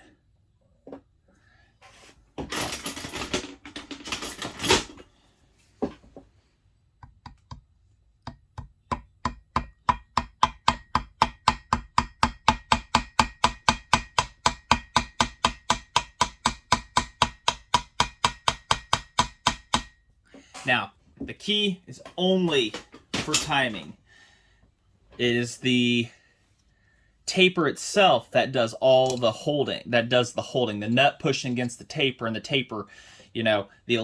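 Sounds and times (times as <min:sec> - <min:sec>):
parts clattering and rustling: 0:01.8 - 0:06.5, 0:20.2 - 0:24.0, 0:28.9 - 0:29.4.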